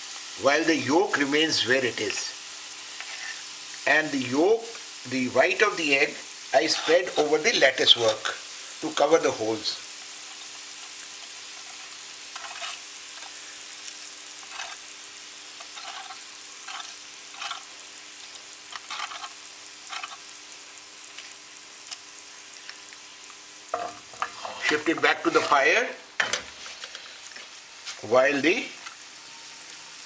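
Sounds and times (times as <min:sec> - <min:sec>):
oil sizzling in a frying pan: 0:00.0 - 0:30.0
oil crackles: 0:06.6 - 0:25.8.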